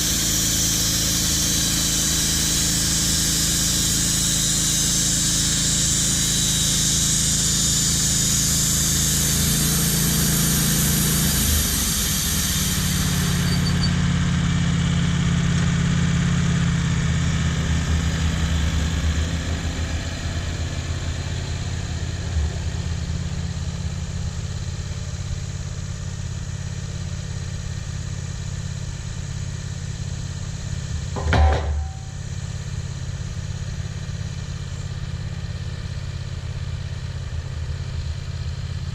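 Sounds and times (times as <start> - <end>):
high-pitched hiss: 0.0 - 13.9
engine running: 0.0 - 38.9
knock: 31.2 - 32.2.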